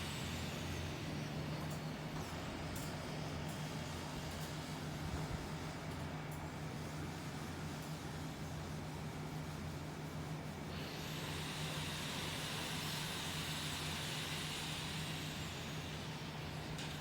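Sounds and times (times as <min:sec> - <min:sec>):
helicopter drone: 0:00.0 - 0:02.3.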